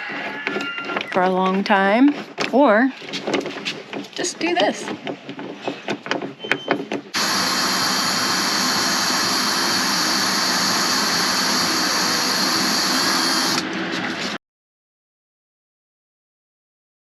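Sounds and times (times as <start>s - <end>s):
power drill running: 7.2s - 13.6s.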